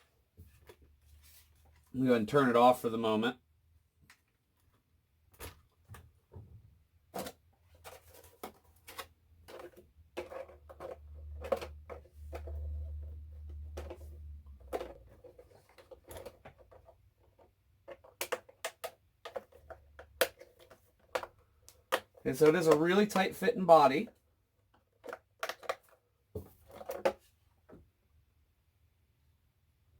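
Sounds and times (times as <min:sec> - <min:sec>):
plastic clicks and rattles: 0:07.2 - 0:23.2, 0:24.6 - 0:26.0.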